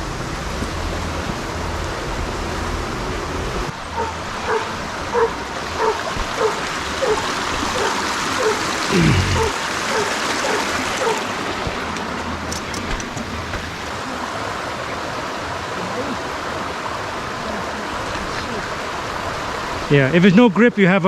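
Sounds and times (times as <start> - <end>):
creek water rushing: 0.0 - 20.2
dog barking: 3.9 - 11.4
low falling call: 3.9 - 14.3.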